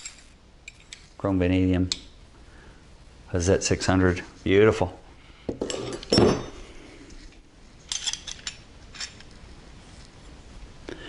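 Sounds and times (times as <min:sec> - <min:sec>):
wrenches clinking together: 0:07.8 - 0:09.3.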